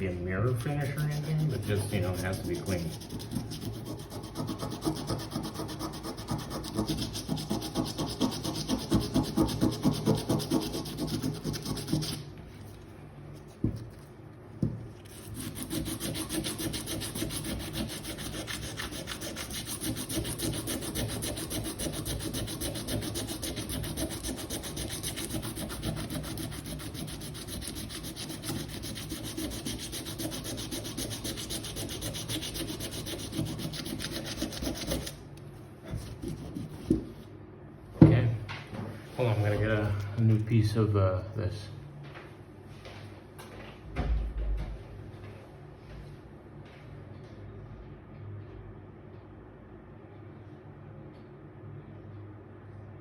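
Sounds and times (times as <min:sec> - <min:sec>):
sandpaper rubbing on metal: 0:00.5 - 0:12.2, 0:15.1 - 0:35.2.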